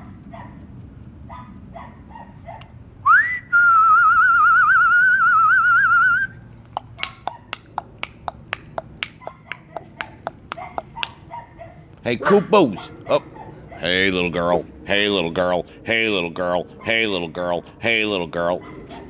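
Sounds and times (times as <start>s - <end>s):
person whistling: 3.1s - 6.3s.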